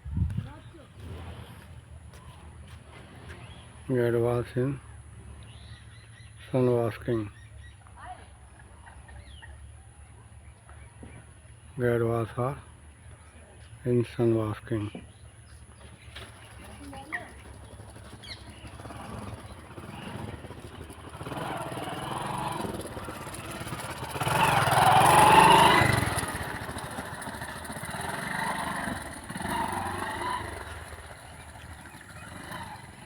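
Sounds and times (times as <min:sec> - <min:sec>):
passing vehicle engine: 0:17.8 - 0:33.0.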